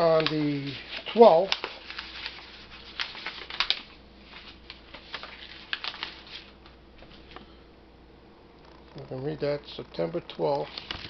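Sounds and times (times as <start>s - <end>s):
packaging rustling and clicking: 0.0s - 7.4s, 10.6s - 11.0s.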